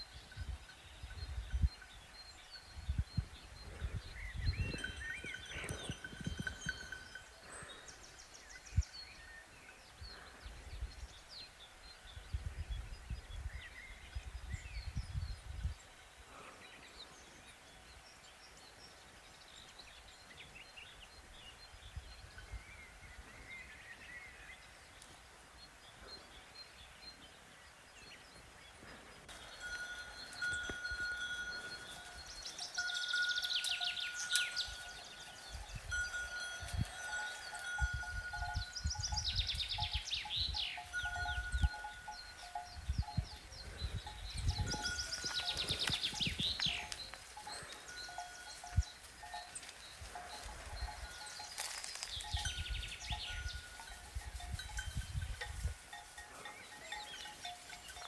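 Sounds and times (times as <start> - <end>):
birds chirping: 0.0 - 58.0
cowbell ringing: 4.6 - 7.9, 29.3 - 58.0.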